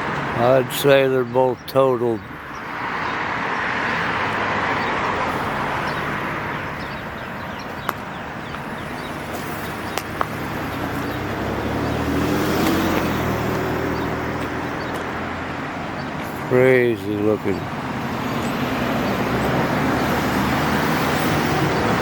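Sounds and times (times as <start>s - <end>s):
cars passing with tyre noise: 0.0s - 22.0s
car engine note: 3.9s - 15.4s.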